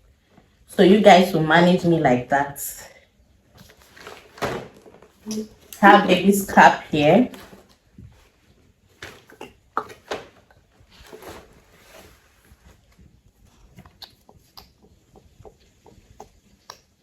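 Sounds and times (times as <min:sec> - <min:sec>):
bag rustling: 0:03.5 - 0:14.0.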